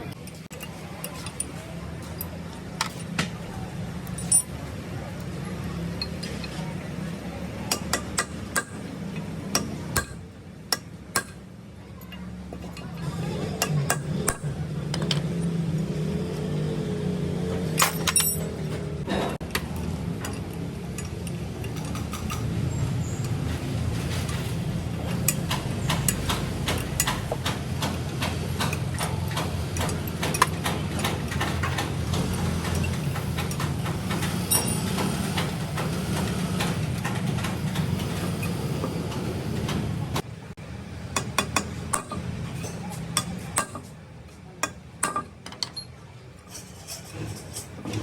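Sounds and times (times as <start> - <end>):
sharp metallic clicks and taps: 25.1 - 38.0, 41.1 - 43.9.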